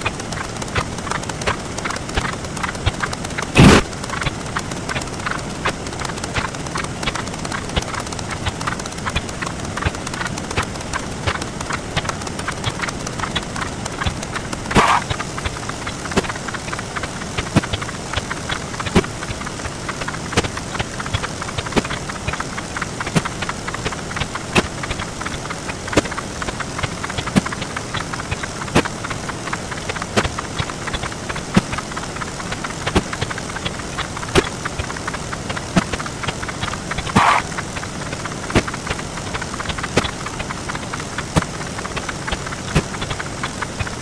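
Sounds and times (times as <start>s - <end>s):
dense rapid clicks: 0.0s - 44.0s.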